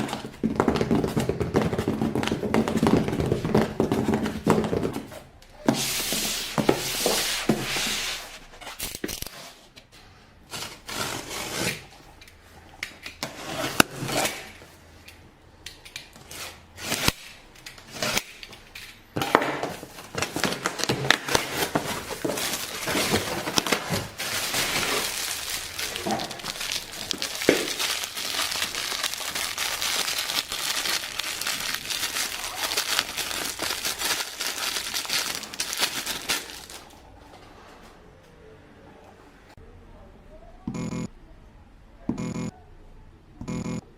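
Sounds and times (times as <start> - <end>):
plastic packaging crinkling: 19.6 - 37.0
cardboard packaging torn open: 19.8 - 36.9.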